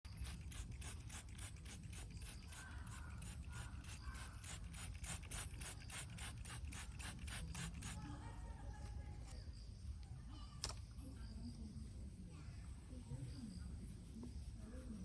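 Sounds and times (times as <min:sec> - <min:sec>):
quick scratchy strokes: 0:00.1 - 0:08.0.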